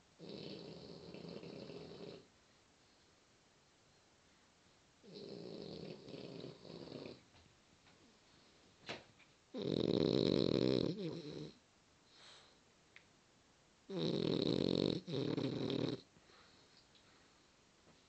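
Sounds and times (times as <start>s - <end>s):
dog snoring: 0.2s - 2.3s, 5.0s - 7.2s, 9.5s - 11.6s, 13.9s - 16.1s.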